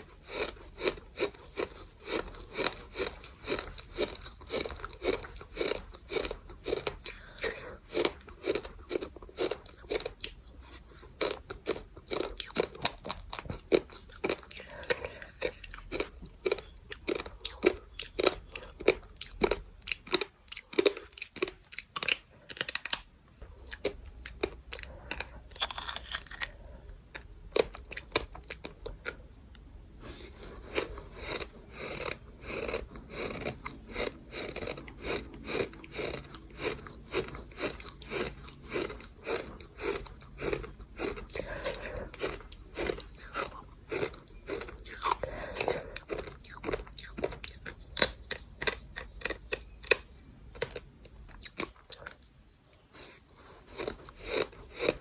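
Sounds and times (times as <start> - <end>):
sand being chewed: 0.2 - 26.7.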